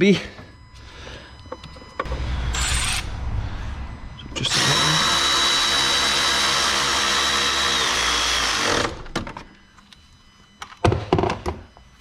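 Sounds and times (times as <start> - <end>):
power tool motor whining: 1.6 - 3.3, 4.3 - 9.9.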